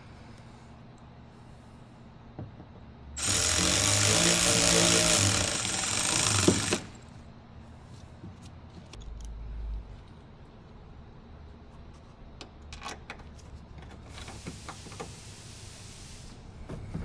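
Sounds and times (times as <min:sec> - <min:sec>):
power drill driving a fastener: 0:03.2 - 0:07.0.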